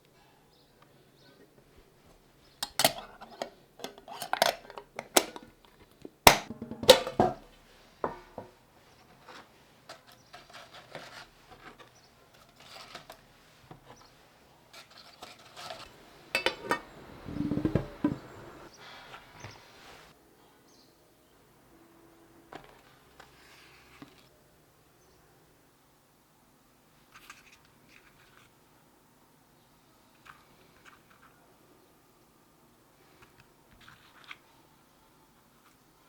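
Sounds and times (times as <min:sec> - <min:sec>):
china cups and cutlery clinking: 0:16.3 - 0:18.2.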